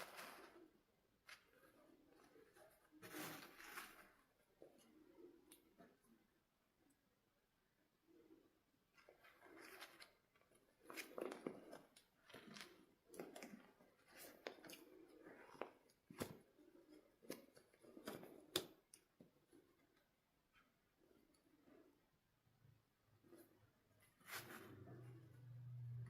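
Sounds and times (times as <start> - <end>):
packaging rustling and scraping: 0.0 - 4.4.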